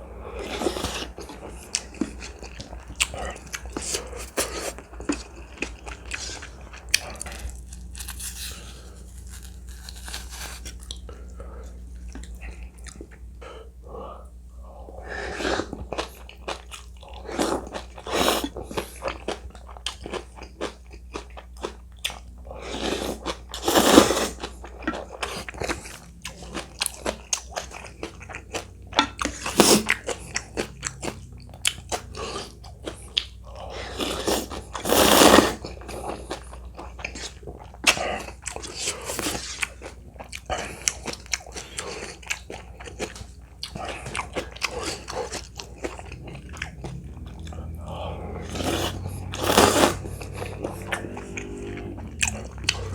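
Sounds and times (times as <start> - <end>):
wet chewing and crunching: 0.4 - 13.2, 15.5 - 52.9.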